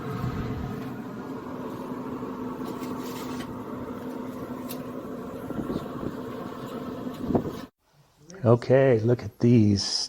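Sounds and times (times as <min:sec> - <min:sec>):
grill fan humming: 0:00.0 - 0:07.7.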